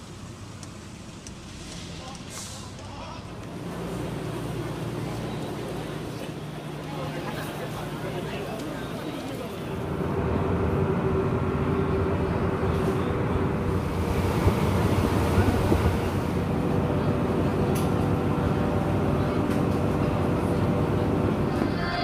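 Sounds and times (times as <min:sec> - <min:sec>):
boat engine humming: 0:03.3 - 0:22.0.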